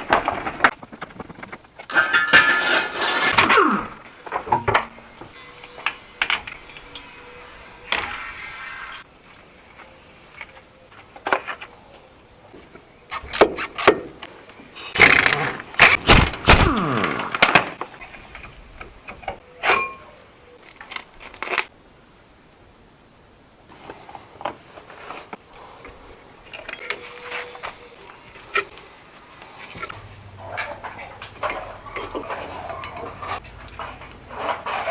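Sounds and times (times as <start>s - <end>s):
metal tools clinking and scraping: 0.0s - 3.6s, 4.2s - 9.0s, 17.3s - 21.7s, 24.8s - 34.9s.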